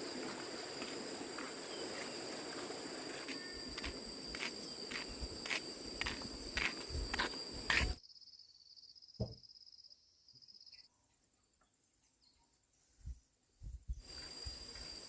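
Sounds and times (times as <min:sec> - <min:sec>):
rustling footsteps: 0:00.0 - 0:08.0
insects chirring: 0:00.0 - 0:15.0
thump: 0:09.2 - 0:09.4.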